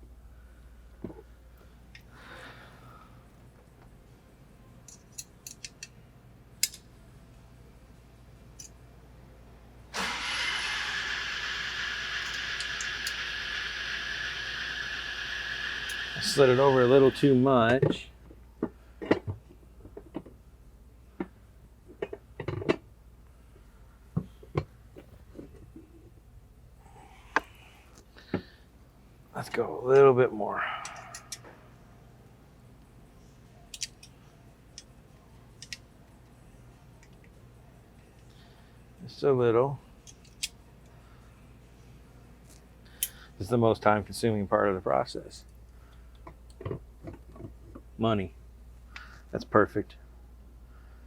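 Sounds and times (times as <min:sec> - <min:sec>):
light clicks of hard parts: 0:04.8 - 0:06.0, 0:06.6 - 0:06.9, 0:33.7 - 0:34.9, 0:35.6 - 0:36.3.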